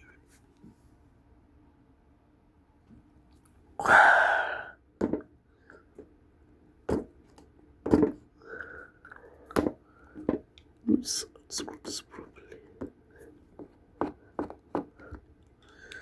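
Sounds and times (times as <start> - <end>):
loud breathy exhale: 3.8 - 4.8.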